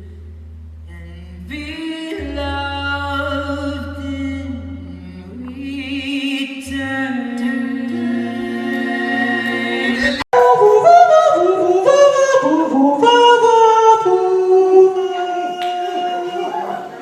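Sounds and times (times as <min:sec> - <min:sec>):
sustained backing vocal harmonies: 0:00.0 - 0:17.0
vocal group holding a chord: 0:02.1 - 0:17.0.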